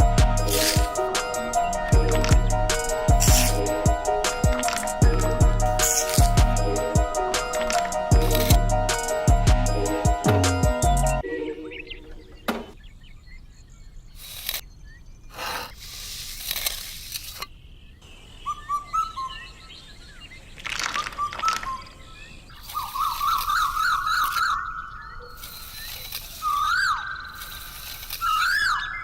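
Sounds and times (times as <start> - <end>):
bird-like chirps and trills: 0.0 - 29.0
bursts of hissing noise: 14.2 - 14.6, 15.3 - 17.4.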